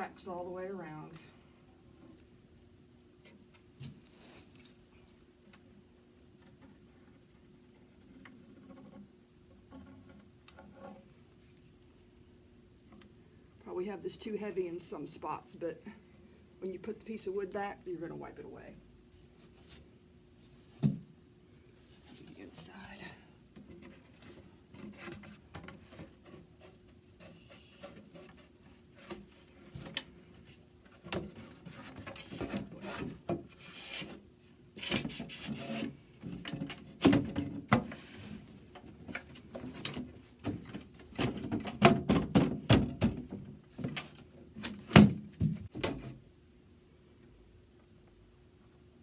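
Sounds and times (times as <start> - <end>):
wood scraping against wood: 23.6 - 37.0.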